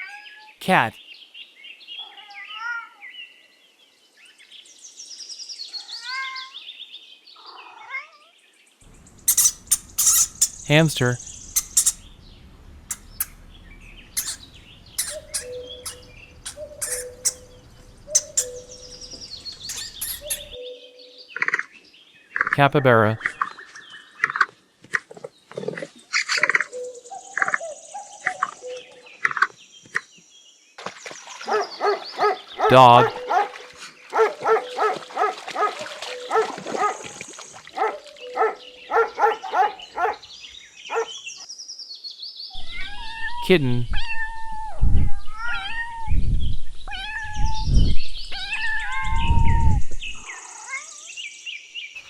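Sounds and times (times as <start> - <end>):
capybara chirping clicks: 8.9 - 20.6, 31.5 - 33.5, 34.2 - 37.0, 37.8 - 40.2
capybara whining calls: 9.0 - 20.6, 31.5 - 37.1, 37.8 - 40.2, 40.9 - 41.1
kitten mewing: 9.2 - 12.1, 12.8 - 20.6, 31.5 - 33.5
low rumbling handling noise: 11.2 - 20.6.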